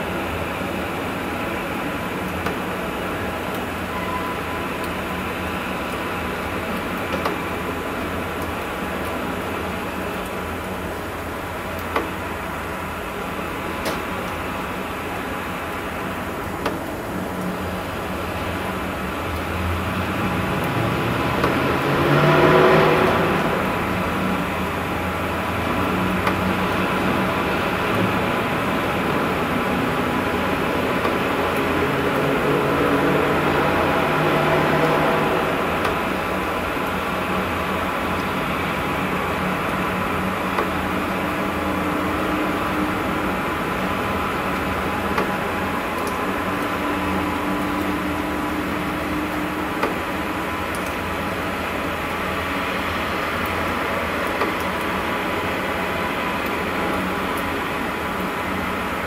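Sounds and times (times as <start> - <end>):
held higher tone: 3.9 - 4.7.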